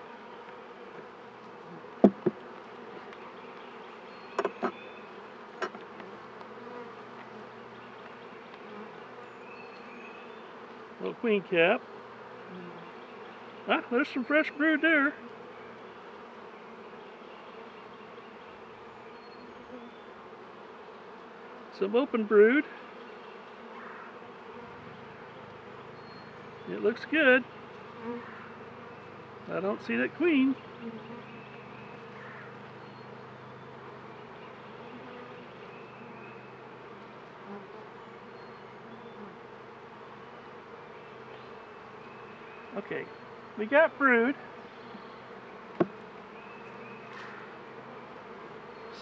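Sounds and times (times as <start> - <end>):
bees buzzing: 0.0 - 49.0.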